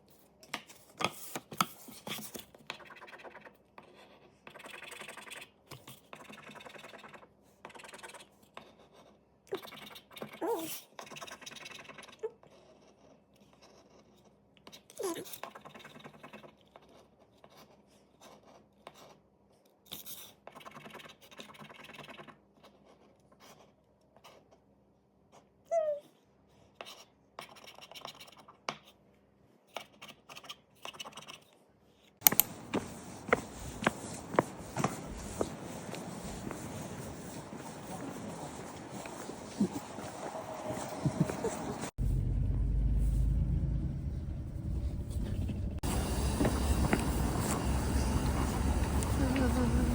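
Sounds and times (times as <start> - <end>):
knocks and steps: 32.2 - 40.1
scratching and rubbing strokes: 32.3 - 42.3.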